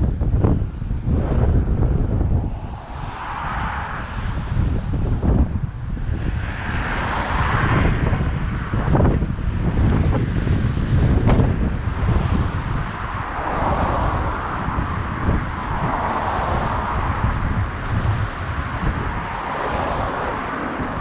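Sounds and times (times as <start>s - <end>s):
wind buffeting microphone: 0.0s - 21.0s
vehicle tyre hiss passing: 1.0s - 5.4s.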